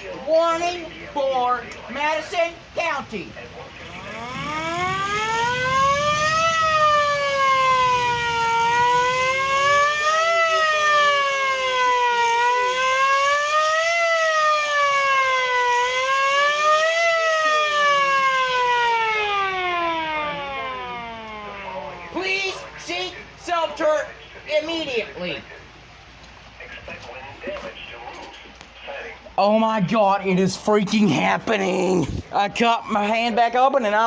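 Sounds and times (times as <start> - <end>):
wailing siren: 3.7 - 22.1.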